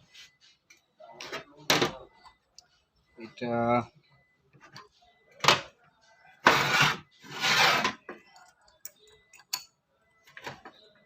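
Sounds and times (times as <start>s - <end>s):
metal parts scraping: 6.4s - 8.0s.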